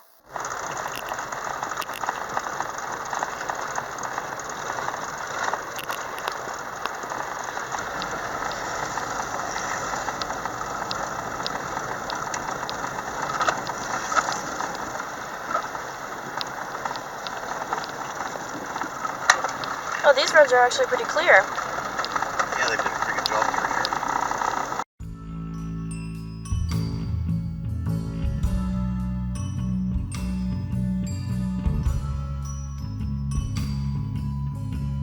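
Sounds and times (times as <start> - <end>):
small clicks: 0.3 - 24.8
tyres hissing on wet road: 0.3 - 24.8.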